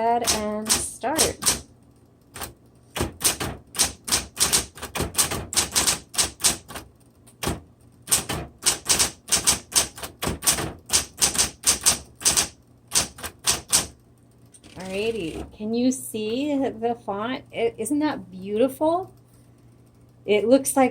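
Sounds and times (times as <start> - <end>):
electric typewriter key strikes: 0.0 - 15.4.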